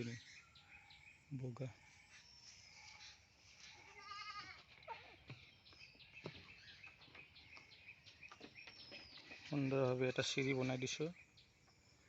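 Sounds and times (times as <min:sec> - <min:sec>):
goat bleating: 0:03.8 - 0:04.7.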